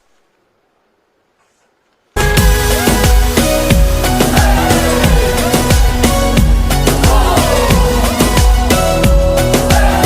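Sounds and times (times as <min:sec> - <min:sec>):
electronic music with drum beat: 0:02.2 - 0:10.0.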